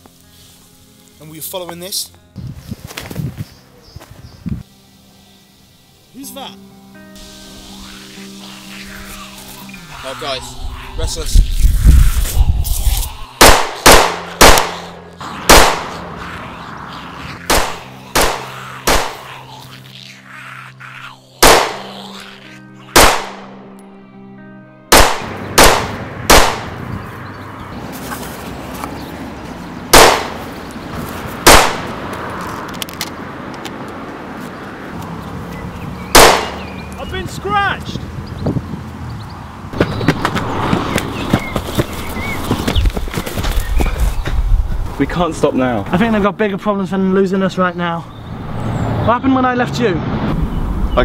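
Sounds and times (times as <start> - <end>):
background music: 0.0 - 11.8, 12.6 - 27.9
gunshots: 13.4 - 16.0, 17.5 - 19.2, 21.4 - 21.9, 23.0 - 23.5, 24.9 - 26.8, 29.9 - 30.4, 31.4 - 31.9, 36.2 - 36.6.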